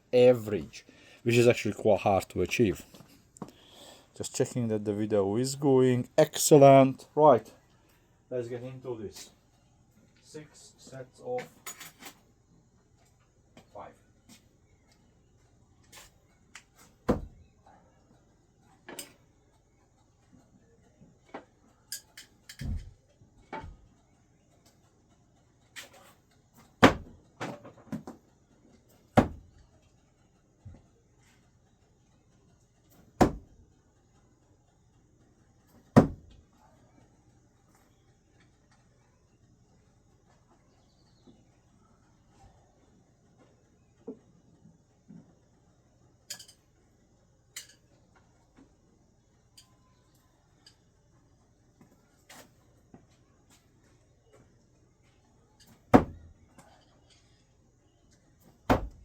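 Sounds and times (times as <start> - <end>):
screwdrivers knocking into target: 22.0 - 23.8, 32.9 - 33.6
screwdrivers thudding into target: 22.0 - 23.8, 25.8 - 28.2, 29.0 - 29.6, 32.9 - 33.6, 35.8 - 36.4, 55.6 - 56.4, 58.6 - 59.0
screwdrivers knocking on target: 33.2 - 33.6.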